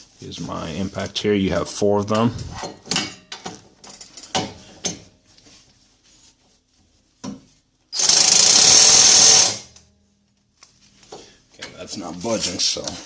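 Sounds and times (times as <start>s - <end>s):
impact wrench hammering: 8.0s - 9.7s.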